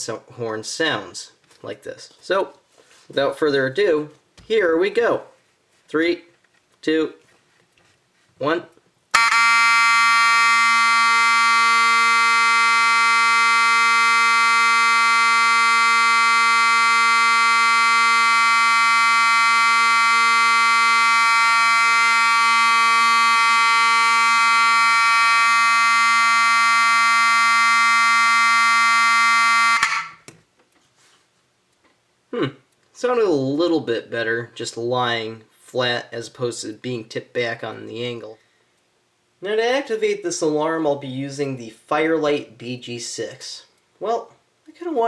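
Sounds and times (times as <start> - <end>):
fire alarm horn buzzing: 9.1 - 30.3.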